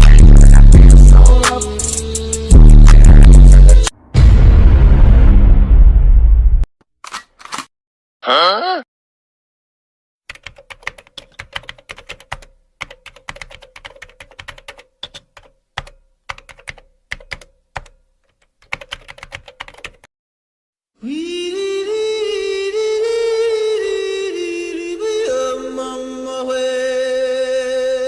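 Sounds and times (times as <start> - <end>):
fast typing on keyboard: 10.3 - 20.1
person singing long note: 21.0 - 28.0.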